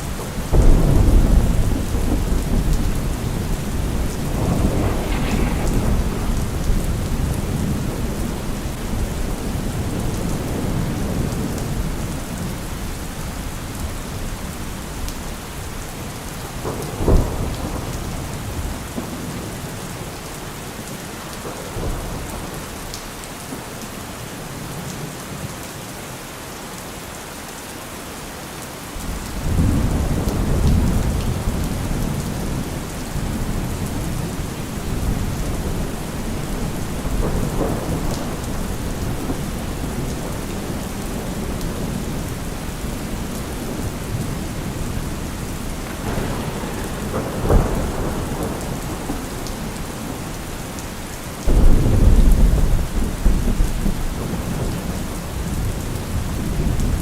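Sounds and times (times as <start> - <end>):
sharp thunderclap: 0.0 - 12.7, 16.5 - 19.5, 29.0 - 50.8, 51.4 - 57.0
deep rolling thunder rumble: 0.0 - 20.0, 29.0 - 57.0
heavy rain: 0.0 - 57.0.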